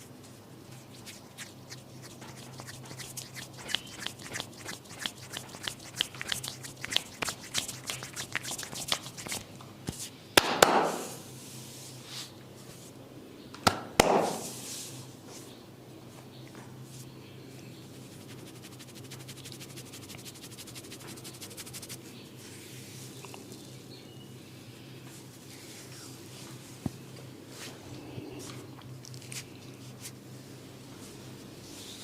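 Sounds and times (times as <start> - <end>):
hands tapping in massage: 2.1 - 9.4.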